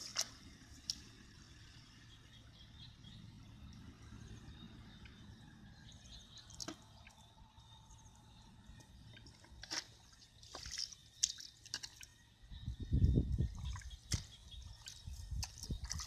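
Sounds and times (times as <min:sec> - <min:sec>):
water dripping and splashing: 0:06.4 - 0:07.2, 0:09.1 - 0:12.2, 0:13.4 - 0:16.0.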